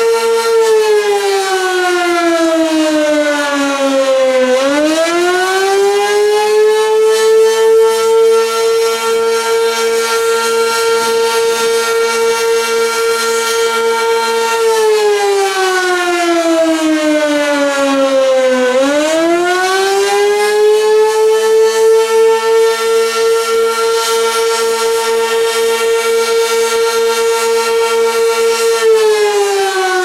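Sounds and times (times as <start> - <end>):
warning siren wailing: 0.0 - 30.0.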